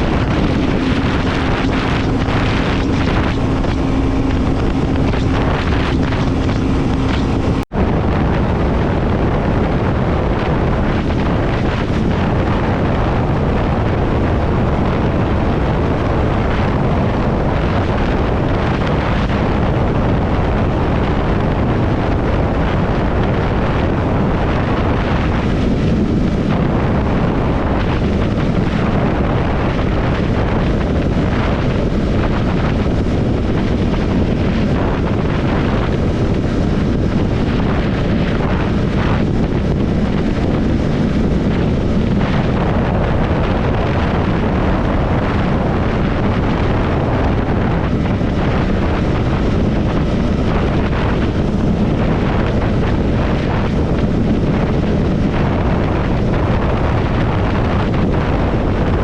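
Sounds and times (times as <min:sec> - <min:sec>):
motorcycle engine running: 0:00.0 - 0:56.2
wind rushing over microphone: 0:00.0 - 0:59.0.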